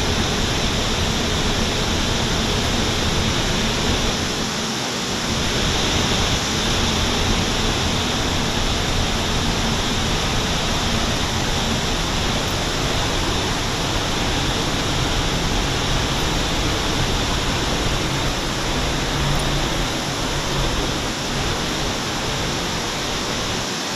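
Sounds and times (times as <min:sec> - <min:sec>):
waterfall roaring: 0:00.0 - 0:23.9.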